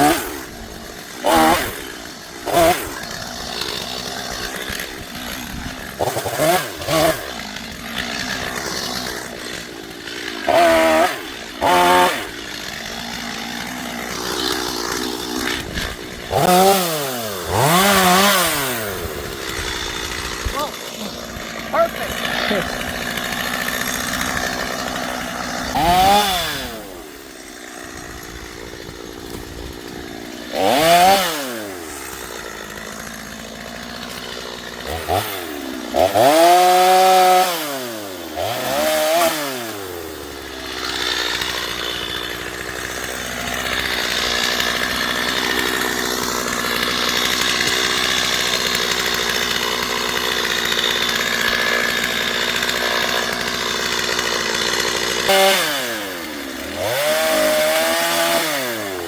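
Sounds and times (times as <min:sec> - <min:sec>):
chainsaw revving: 0:00.0 - 0:59.0.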